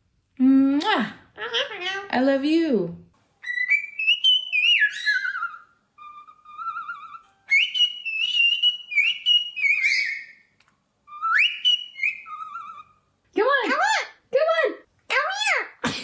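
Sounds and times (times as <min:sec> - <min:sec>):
parrot whistling: 0:03.4 - 0:10.5, 0:11.1 - 0:13.1.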